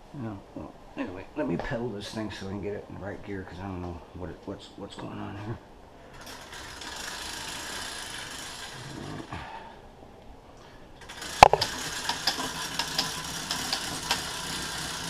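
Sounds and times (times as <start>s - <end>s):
bicycle chain and gears whirring: 6.0s - 9.8s, 11.0s - 15.0s
freewheel pawls ticking: 11.0s - 15.0s.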